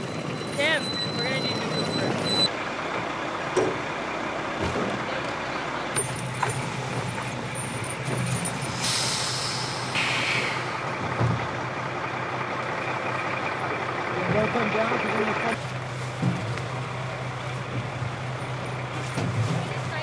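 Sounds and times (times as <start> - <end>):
diesel truck engine running: 0.0 - 20.0
loud burst of hiss: 8.8 - 10.7.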